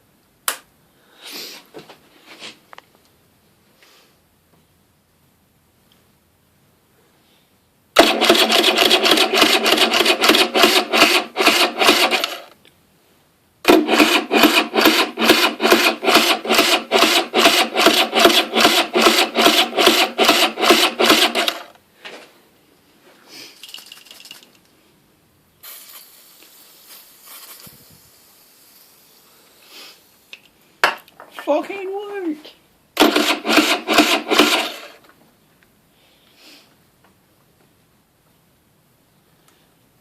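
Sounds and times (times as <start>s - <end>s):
electric starter cranking engine: 8.0s - 12.5s, 13.6s - 21.8s, 33.0s - 35.0s.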